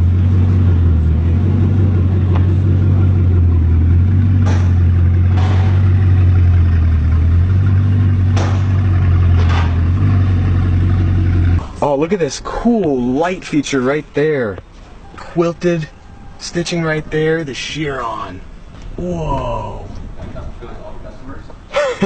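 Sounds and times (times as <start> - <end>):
deep engine hum: 0.0 - 11.7.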